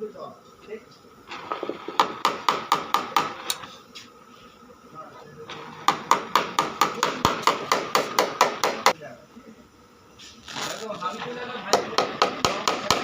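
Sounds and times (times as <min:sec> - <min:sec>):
hammer tapping on sheet metal: 0:05.9 - 0:08.9, 0:11.7 - 0:13.0.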